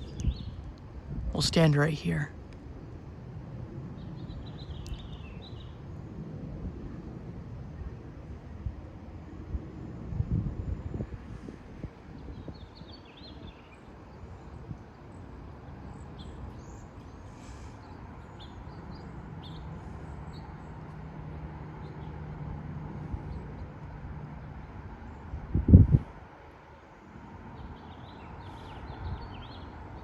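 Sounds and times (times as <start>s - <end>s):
small birds chirping: 0.0s - 0.6s, 4.0s - 5.8s, 15.9s - 20.9s, 27.6s - 30.0s
light wind rumble: 0.0s - 30.0s.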